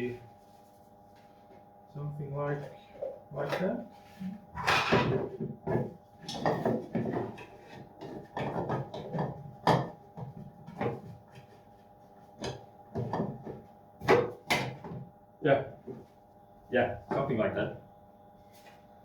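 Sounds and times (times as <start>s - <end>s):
plastic parts knocking and scraping: 4.7s - 11.2s.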